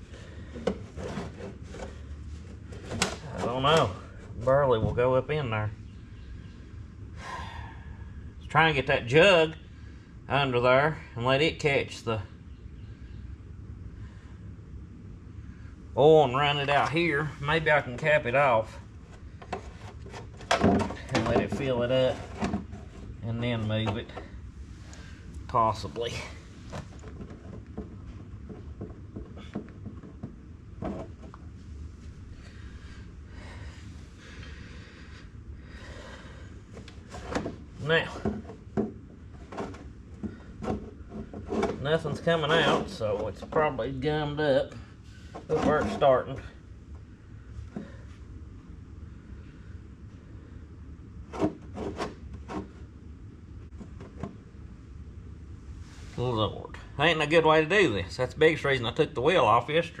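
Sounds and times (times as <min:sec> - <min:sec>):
steady low hum: 0:00.0 - 1:00.0
tools clunking and knocking: 0:00.5 - 0:03.5, 0:19.4 - 0:23.1, 0:26.7 - 0:31.4, 0:36.8 - 0:43.6.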